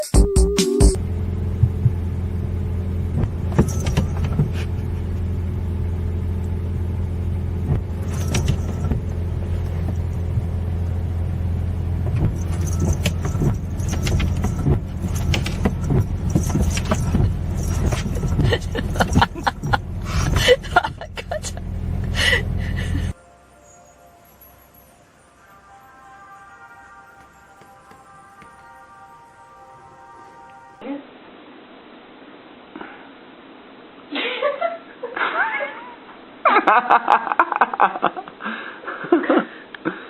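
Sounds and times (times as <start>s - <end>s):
low motor hum: 0.8s - 23.2s
light jingling and clicking: 3.3s - 5.3s, 6.4s - 11.1s, 11.7s - 21.7s, 27.1s - 28.9s.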